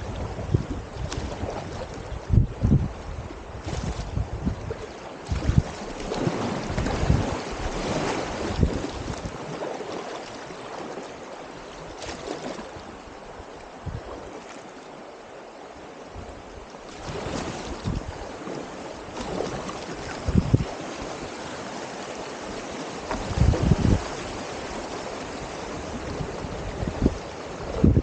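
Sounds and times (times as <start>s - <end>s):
creek rushing over rocks: 16.9s - 28.0s.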